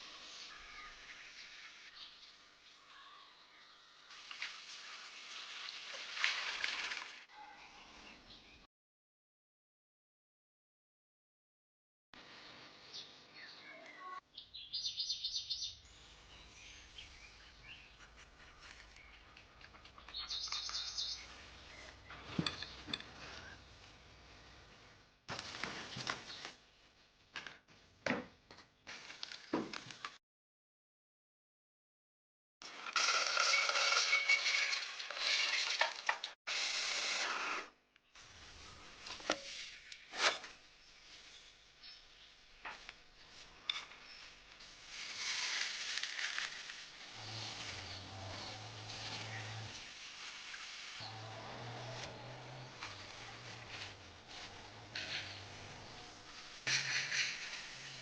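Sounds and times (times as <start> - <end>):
birds chirping: 18.8 - 22.8.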